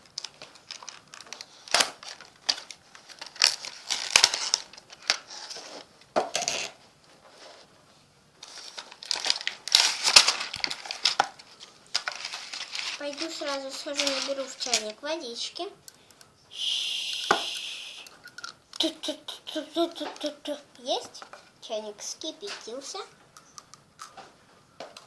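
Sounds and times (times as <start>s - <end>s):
rustling: 8.4s - 15.0s
toy dishes clattering: 12.0s - 15.0s.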